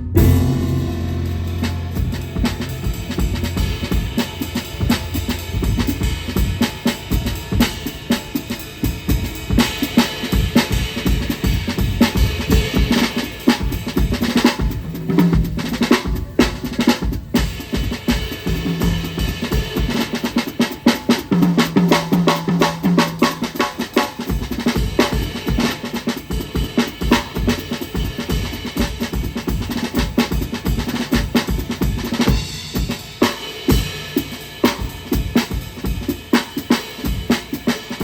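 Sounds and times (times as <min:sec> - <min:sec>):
low band notes: 0:00.0 - 0:08.6
jazz drum kit playing fast: 0:00.0 - 0:38.0.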